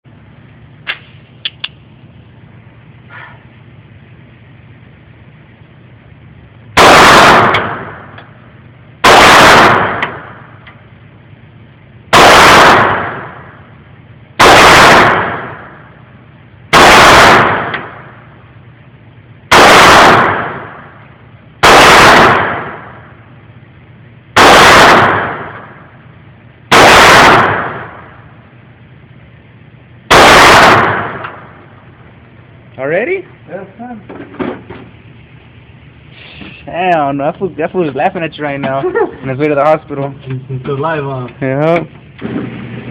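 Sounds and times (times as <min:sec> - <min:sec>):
pistol shots with echo: 0:06.8 - 0:08.2, 0:09.0 - 0:10.6, 0:12.1 - 0:13.6, 0:14.4 - 0:15.9, 0:16.7 - 0:18.2, 0:19.5 - 0:21.0, 0:21.6 - 0:23.2, 0:24.4 - 0:25.9, 0:26.7 - 0:28.3, 0:30.1 - 0:31.7.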